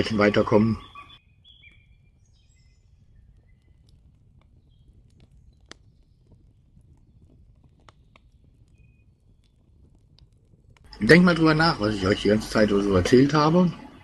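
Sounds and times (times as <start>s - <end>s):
small clicks and crackles: 2.4s - 11.0s.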